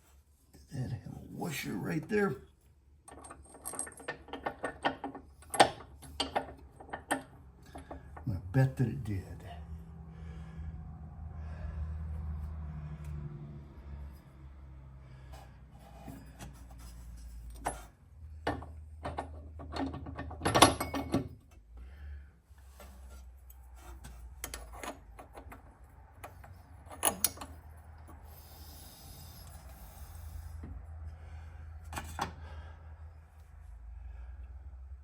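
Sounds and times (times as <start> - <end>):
metal parts clicking and knocking: 3.0 - 8.3, 17.4 - 21.5, 24.0 - 28.2.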